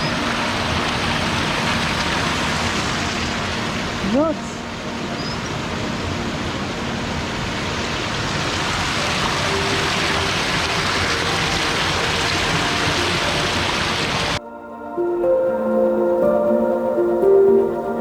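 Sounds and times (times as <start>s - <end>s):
small waterfall splashing: 0.0s - 14.4s.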